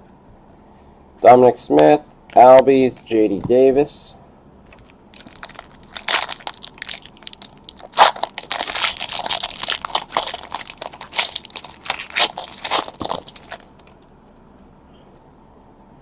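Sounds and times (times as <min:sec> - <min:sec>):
foil wrapper crinkling: 0:04.7 - 0:14.0.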